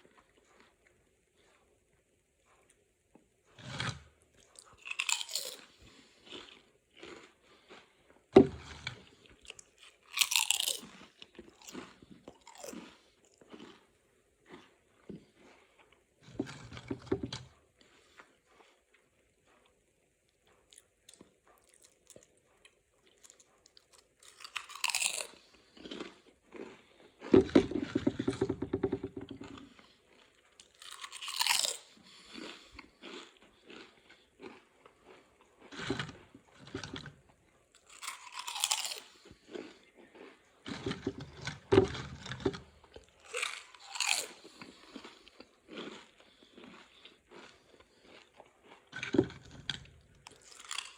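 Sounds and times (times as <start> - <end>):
chips crunching: 3.6 - 13.9, 20.7 - 37.2, 37.8 - 50.9
chip bag crinkling: 4.8 - 5.7, 9.9 - 11.0, 24.2 - 25.3, 42.0 - 44.4, 48.9 - 50.9.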